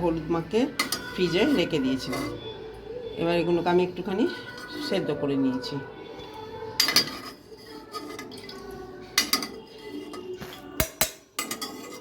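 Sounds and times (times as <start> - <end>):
utensils clinking against cookware: 0.6 - 2.5, 6.7 - 12.0.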